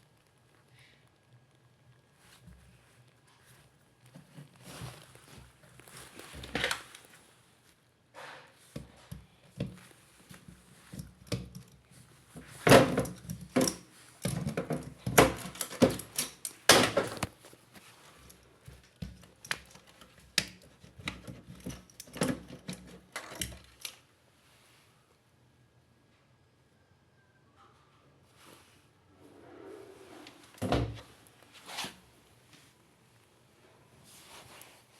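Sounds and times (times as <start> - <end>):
dishwasher parts knocking and clattering: 12.4 - 17.3.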